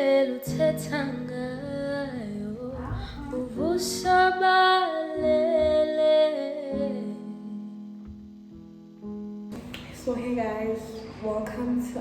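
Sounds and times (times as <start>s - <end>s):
song with singing voice: 0.0s - 7.5s.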